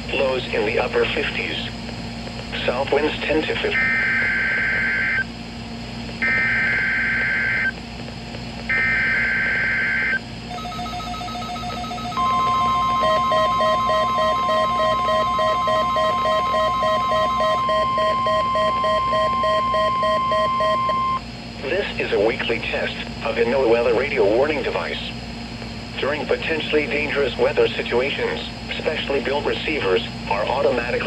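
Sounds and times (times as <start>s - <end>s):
rapidly pulsing alarm tone: 8.7s - 21.2s
steady warning alarm tone: 8.7s - 21.2s
warbling digital header tones: 10.5s - 21.2s.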